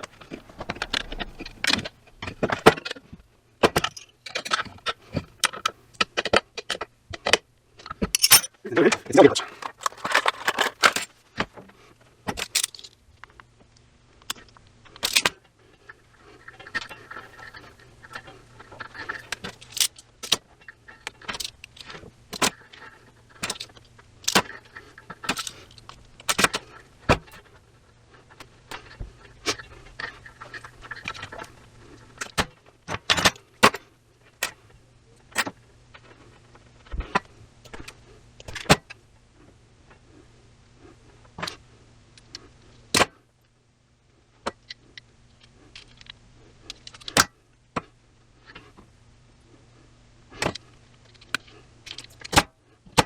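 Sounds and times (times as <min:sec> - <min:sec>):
steady low hum: 0:00.0 - 0:06.0
small metal parts clinking: 0:08.0 - 0:08.6, 0:09.4 - 0:11.2, 0:12.4 - 0:13.0, 0:19.0 - 0:20.4.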